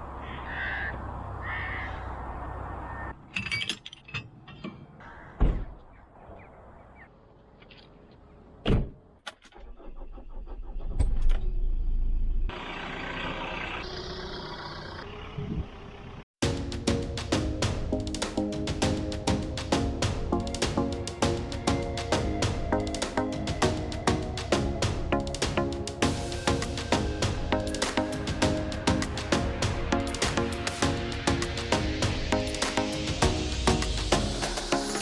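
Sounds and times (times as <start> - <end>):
car engine running: 12.5 - 16.2.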